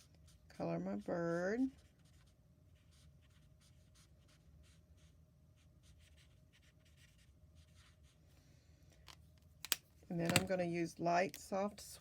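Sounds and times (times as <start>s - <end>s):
marker scratching on cardstock: 1.7s - 8.2s.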